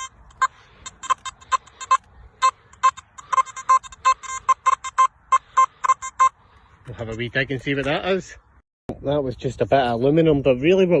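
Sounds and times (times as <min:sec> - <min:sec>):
metal detector short beeps: 0:00.0 - 0:06.4.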